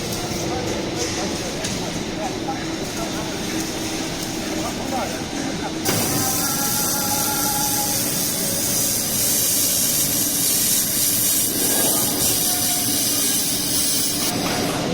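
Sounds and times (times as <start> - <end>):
laser welding machine hiss: 5.8 - 14.7.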